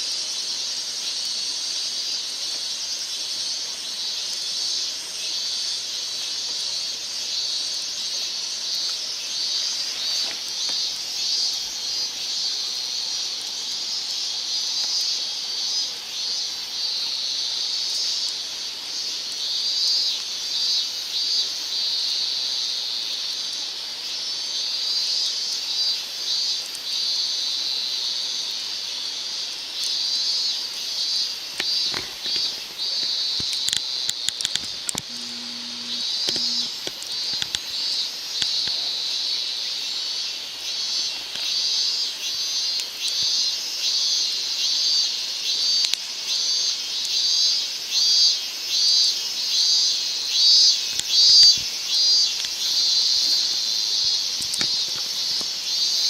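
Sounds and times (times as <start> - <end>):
insects shrilling: 0.0 - 22.4, 25.2 - 56.0
sharp clicks: 31.6 - 37.7.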